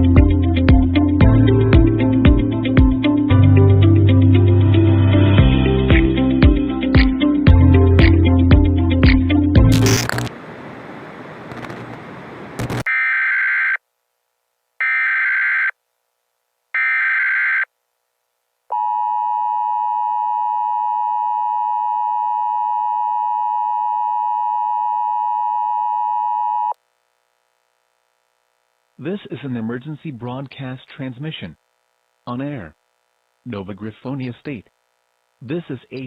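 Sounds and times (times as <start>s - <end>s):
burst of static: 9.7s - 10.4s, 11.3s - 13.0s.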